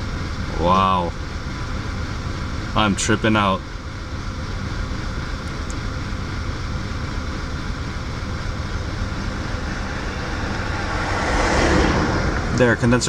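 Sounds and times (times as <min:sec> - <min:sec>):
car engine idling roughly: 0:00.0 - 0:09.2
condenser fan rushing: 0:07.0 - 0:13.0.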